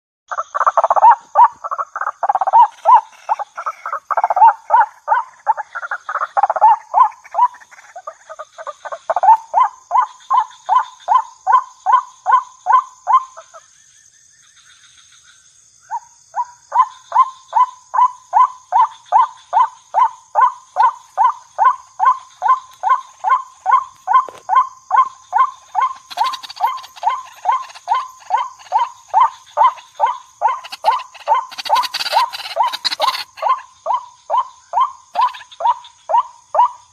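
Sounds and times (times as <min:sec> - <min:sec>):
waterhen calling: 0:00.3 - 0:09.4, 0:25.3 - 0:33.6, 0:35.2 - 0:35.7.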